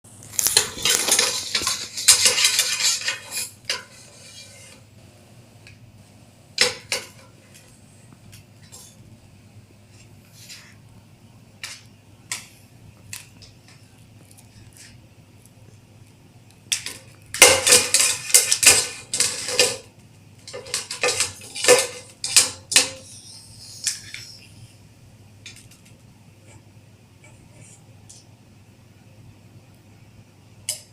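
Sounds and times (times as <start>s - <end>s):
metal utensils clattering on pots: 0.4s - 4.8s, 6.6s - 7.7s, 16.7s - 23.1s.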